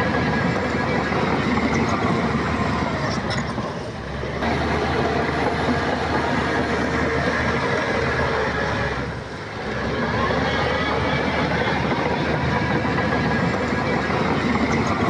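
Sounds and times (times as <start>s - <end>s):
diesel engine under load: 0.0s - 15.0s
steel tracks clanking: 4.4s - 10.1s.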